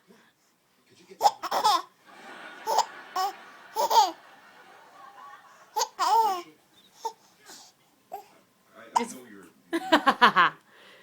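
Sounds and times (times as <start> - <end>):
young child laughing: 2.6 - 4.2.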